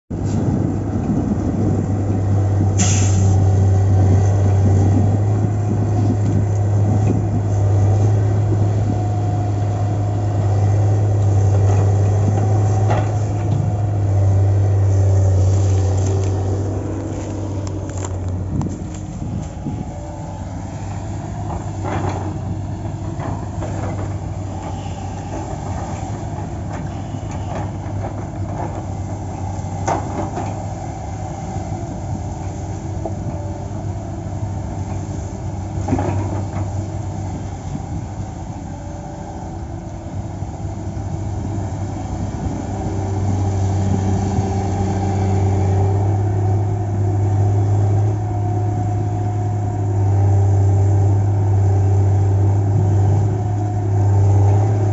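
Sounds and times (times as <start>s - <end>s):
heavy diesel engine running: 0.1s - 54.9s.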